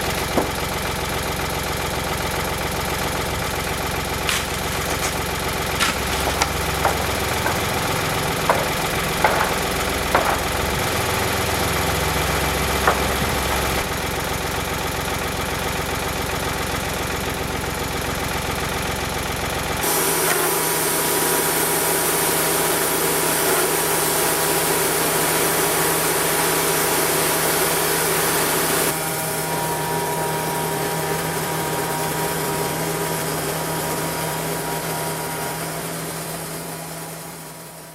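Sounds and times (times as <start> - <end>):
sawmill engine running: 0.0 - 37.9
sharp knocks: 4.3 - 10.6, 12.9 - 13.6.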